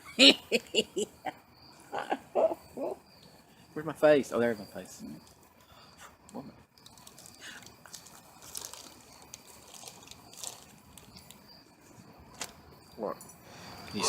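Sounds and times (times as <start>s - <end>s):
insects chirring: 0.0s - 14.0s
soft clicks and crackles: 5.2s - 13.4s.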